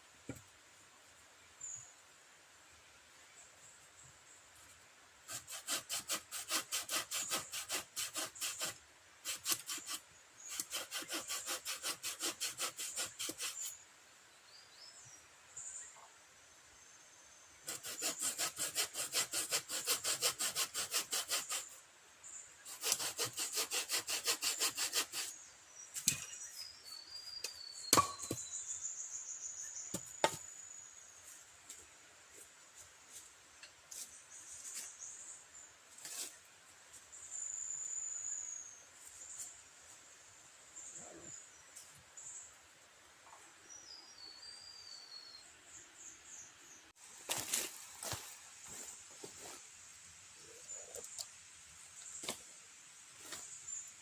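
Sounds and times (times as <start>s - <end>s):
hand tool stroking wood: 5.3s - 13.8s, 17.7s - 21.8s, 22.7s - 25.4s.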